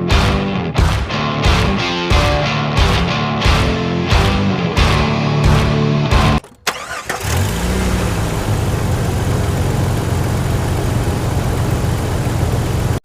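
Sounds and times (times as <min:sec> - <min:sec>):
motor starting and running: 0:06.4 - 0:12.8.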